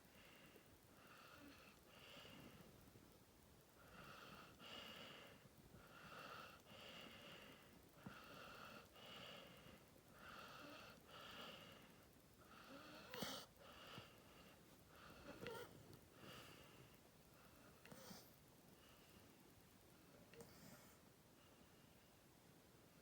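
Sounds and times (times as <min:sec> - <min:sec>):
dog snoring softly: 0:12.5 - 0:16.4, 0:17.4 - 0:19.0, 0:20.3 - 0:21.0.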